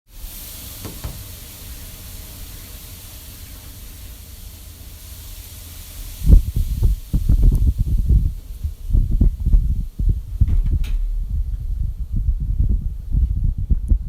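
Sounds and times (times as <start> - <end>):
blizzard wind hiss: 0.1 - 14.0
wind gusts buffeting microphone: 6.1 - 14.0.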